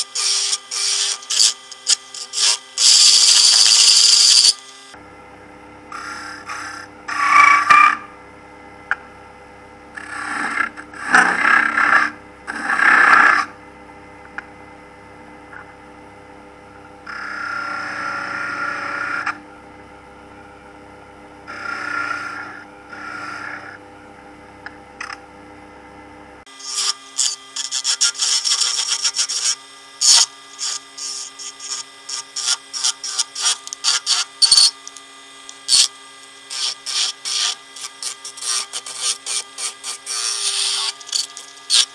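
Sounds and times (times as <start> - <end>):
cutting tool scraping wood: 0.0 - 4.5, 26.5 - 41.9
scratchy strokes: 26.6 - 34.8.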